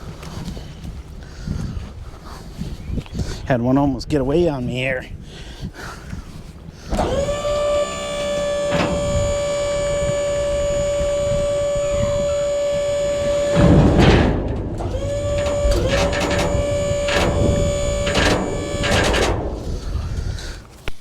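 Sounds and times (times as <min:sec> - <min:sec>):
machinery high-pitched whine: 0:06.9 - 0:20.4.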